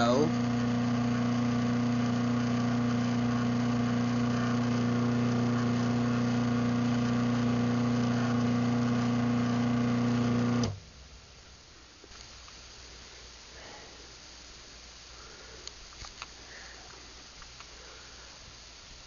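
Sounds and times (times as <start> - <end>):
garage door opener motor hum: 0.0 - 10.8.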